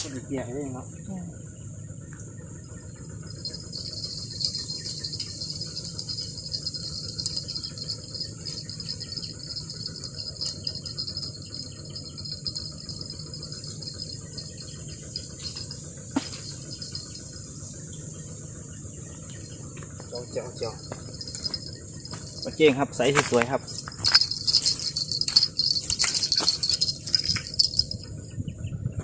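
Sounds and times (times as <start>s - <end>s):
insects shrilling: 0.0s - 28.2s
lower pulsing insect chirr: 0.0s - 29.0s.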